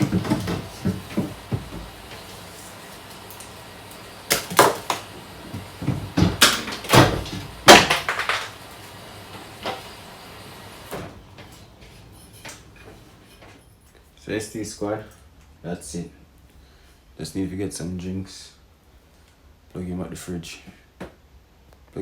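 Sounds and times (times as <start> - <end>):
containers and fridge parts knocking: 0.0 - 2.4, 4.3 - 8.6.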